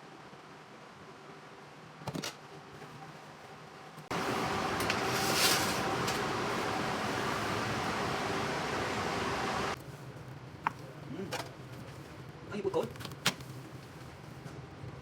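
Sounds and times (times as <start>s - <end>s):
appliance fan whirring: 4.1s - 10.1s.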